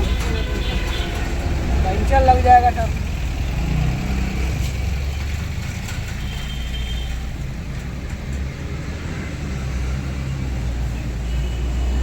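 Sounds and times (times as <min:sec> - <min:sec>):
low vehicle rumble: 0:00.0 - 0:12.0.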